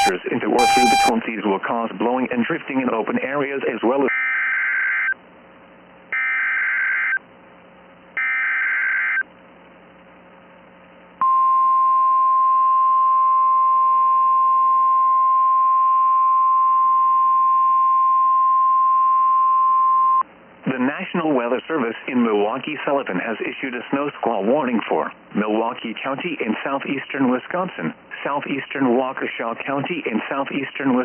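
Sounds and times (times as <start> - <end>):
steady warning alarm tone: 0.0 - 1.1
warbling data tones: 0.0 - 1.1.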